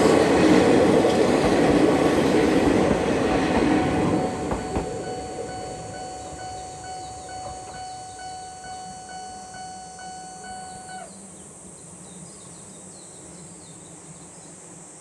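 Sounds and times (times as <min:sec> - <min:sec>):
insects chirping: 0:00.0 - 0:15.0
level-crossing alarm ringing: 0:03.2 - 0:11.1.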